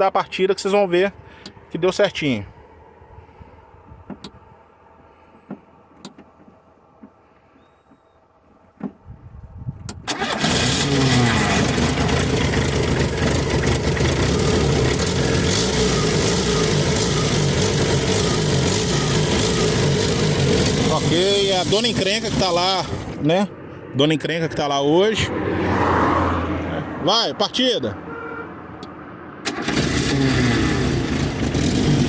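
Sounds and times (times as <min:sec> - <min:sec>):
car engine starting and running: 0:08.4 - 0:32.0.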